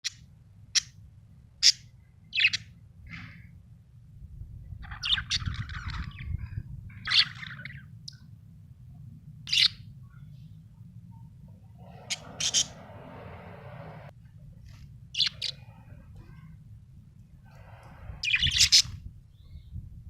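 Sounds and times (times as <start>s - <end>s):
budgerigar chirping: 11.9s - 12.9s, 15.2s - 15.6s, 18.2s - 18.9s.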